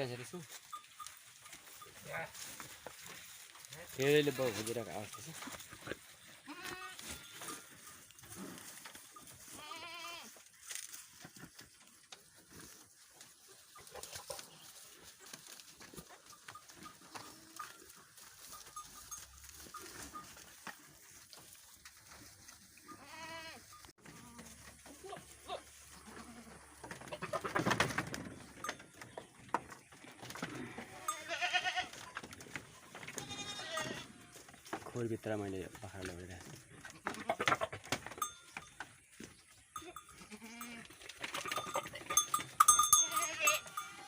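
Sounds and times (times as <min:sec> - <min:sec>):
goats bleating: 0:06.2 - 0:07.7, 0:09.4 - 0:10.4, 0:22.9 - 0:27.4, 0:30.4 - 0:32.0, 0:33.1 - 0:34.4, 0:39.8 - 0:40.9, 0:41.5 - 0:44.0.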